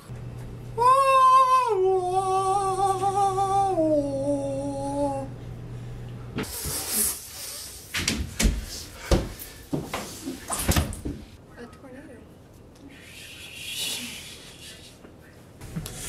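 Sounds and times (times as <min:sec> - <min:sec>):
person humming descending tone: 0:00.8 - 0:05.4
breathy hissing sounds: 0:05.8 - 0:08.0, 0:12.8 - 0:15.0.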